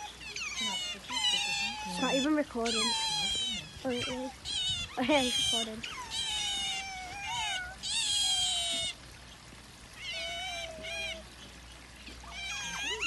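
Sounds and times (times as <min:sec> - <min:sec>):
otters squealing: 0:00.0 - 0:09.0, 0:12.2 - 0:13.0.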